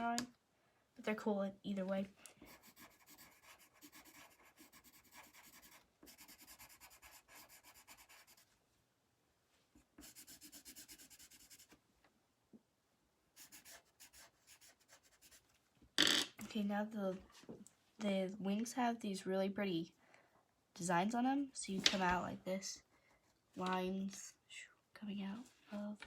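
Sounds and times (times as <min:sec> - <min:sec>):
pencil scratching on paper: 0:02.4 - 0:08.4, 0:10.0 - 0:11.8, 0:13.4 - 0:15.4.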